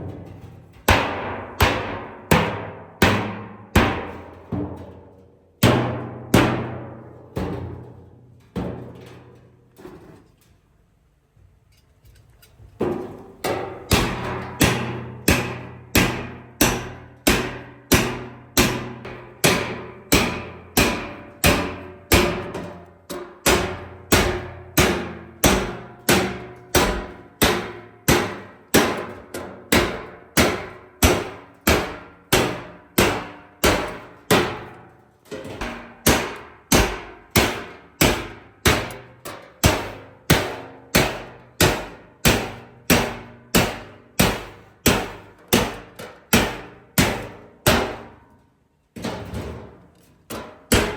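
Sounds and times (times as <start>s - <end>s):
hammering on steel sheet: 0.9s - 4.8s, 5.6s - 7.8s, 13.4s - 34.7s, 35.6s - 48.1s, 50.7s - 50.9s.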